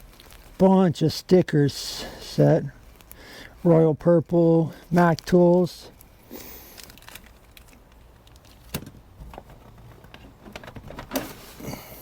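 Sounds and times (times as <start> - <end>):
faint steady hiss: 0.0 - 12.0
items clicking and knocking in box: 7.1 - 11.8.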